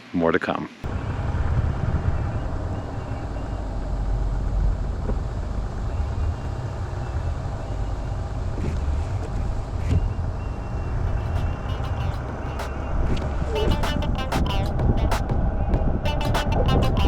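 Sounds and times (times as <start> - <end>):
engine and tyre rumble: 0.9 - 11.6.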